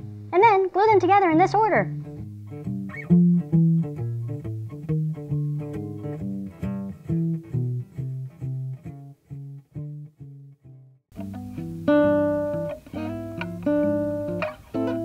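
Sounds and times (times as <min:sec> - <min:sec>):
plucked string notes: 0:00.0 - 0:15.0.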